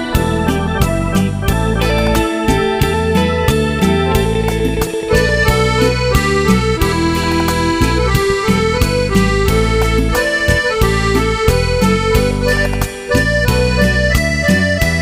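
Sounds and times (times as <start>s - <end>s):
accordion-like melody over beat: 0.0s - 15.0s.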